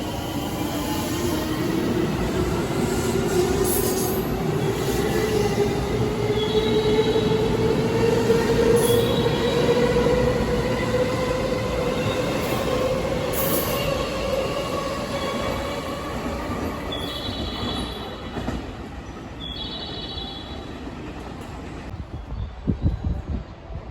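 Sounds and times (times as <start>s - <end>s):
high squeals from wheels: 8.4s - 10.1s, 11.9s - 18.7s.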